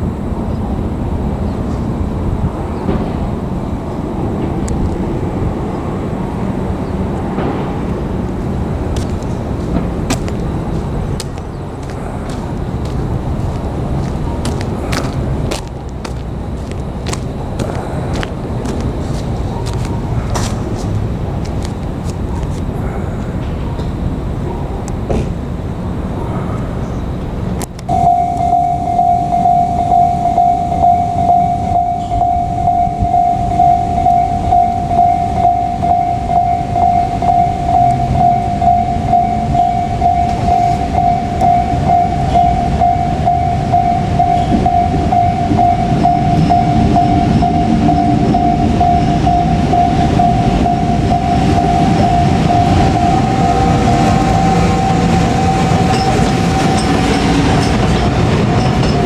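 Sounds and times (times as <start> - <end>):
train rumbling: 0.0 - 59.0
steady high tone: 27.9 - 59.0.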